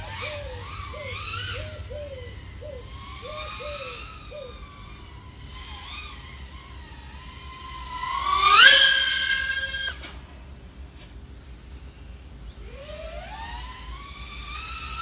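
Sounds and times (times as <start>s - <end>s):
quadcopter motors humming: 0.0s - 15.0s.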